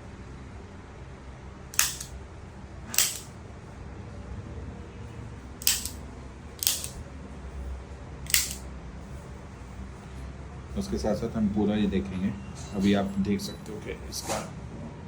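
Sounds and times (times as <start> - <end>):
adjusting instrument clicks: 1.8 - 2.1, 2.9 - 3.3, 5.6 - 6.0, 6.6 - 7.0, 8.3 - 8.6.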